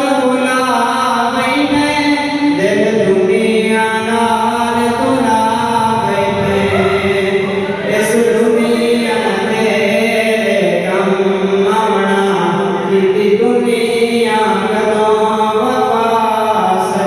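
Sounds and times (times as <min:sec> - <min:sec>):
man chanting over loudspeakers: 0:00.0 - 0:17.0.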